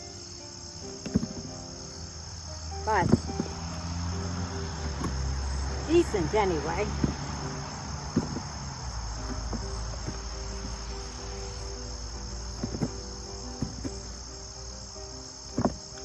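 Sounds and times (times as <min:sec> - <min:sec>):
faint music: 0:00.0 - 0:16.0
insects chirping: 0:00.0 - 0:16.0
sharp knocks: 0:01.0 - 0:01.7, 0:02.8 - 0:11.6, 0:12.4 - 0:14.2.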